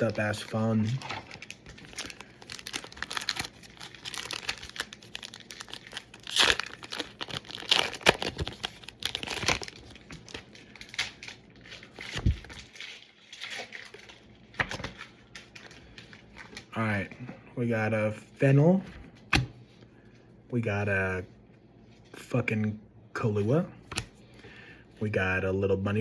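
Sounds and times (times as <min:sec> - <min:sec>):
foil wrapper crinkling and tearing: 0:00.0 - 0:16.7.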